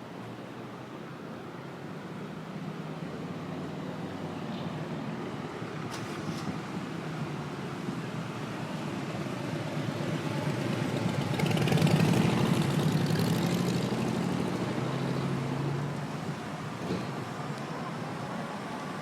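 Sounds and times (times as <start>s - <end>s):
traffic hiss: 0.0s - 10.8s
vehicle engine passing by: 8.8s - 16.2s.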